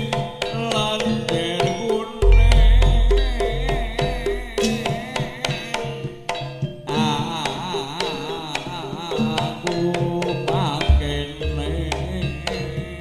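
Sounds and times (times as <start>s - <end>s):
hand drum and percussion: 0.0s - 13.0s
wavering vibrato melody: 2.2s - 5.9s, 10.6s - 13.0s.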